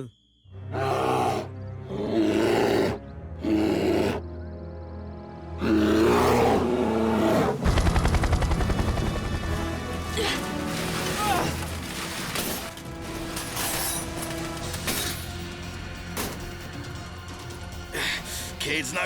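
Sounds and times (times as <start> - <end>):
background music: 0.0 - 19.0
cartoon bear roaring: 0.7 - 4.2, 5.6 - 7.6.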